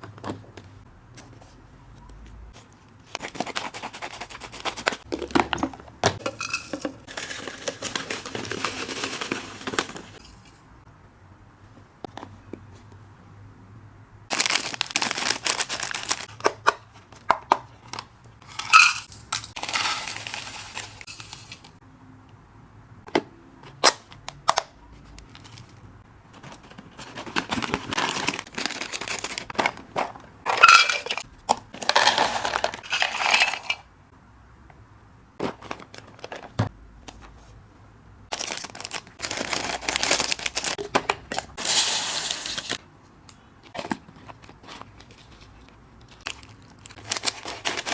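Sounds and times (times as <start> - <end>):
dry snacks rattling into containers: 3.2 - 10.2, 14.3 - 16.3, 18.4 - 21.7, 27.0 - 33.9, 38.3 - 40.8, 41.6 - 42.8, 44.6 - 47.9
container clicks and clinks: 5.1 - 9.7, 18.4 - 21.7, 29.0 - 33.9.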